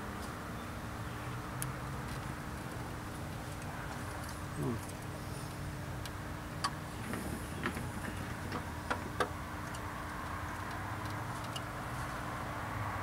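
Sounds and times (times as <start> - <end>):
light metal clicks and knocks: 7.6 - 11.7.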